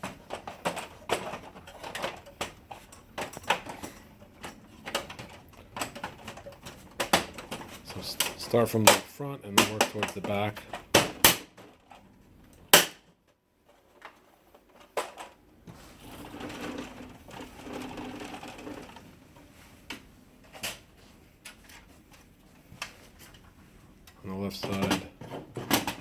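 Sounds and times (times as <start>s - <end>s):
plastic scraping: 13.7s - 19.1s.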